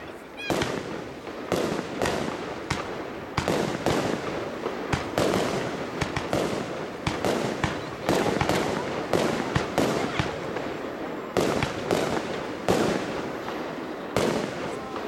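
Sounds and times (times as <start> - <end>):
firework shells bursting: 0.5 - 15.0.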